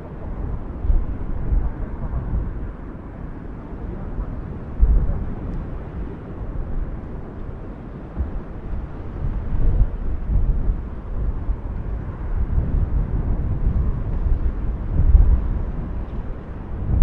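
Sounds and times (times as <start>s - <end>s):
volcano low rumble: 0.0s - 17.0s.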